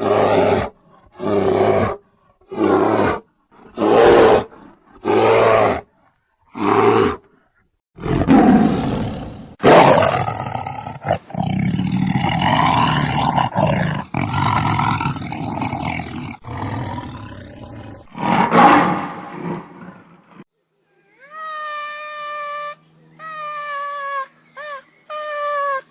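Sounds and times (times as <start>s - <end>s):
large animal roaring: 8.0s - 20.0s.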